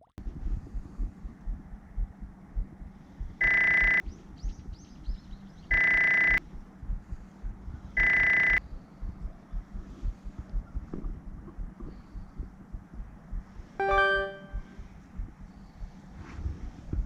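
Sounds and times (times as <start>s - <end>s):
long electronic beeps: 3.4s - 4.0s, 5.7s - 6.4s, 8.0s - 8.6s, 13.8s - 14.7s.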